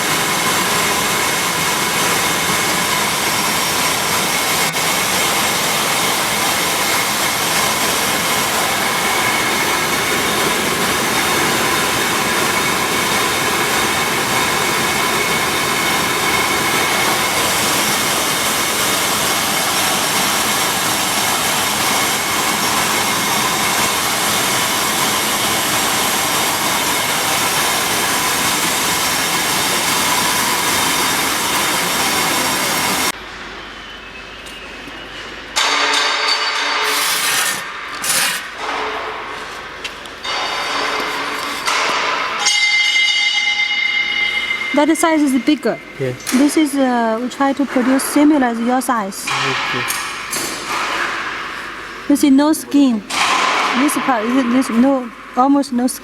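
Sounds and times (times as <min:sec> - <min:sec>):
milling machinery roaring: 0:00.0 - 0:33.2
high machine whine: 0:00.0 - 0:38.0, 0:39.7 - 0:56.0.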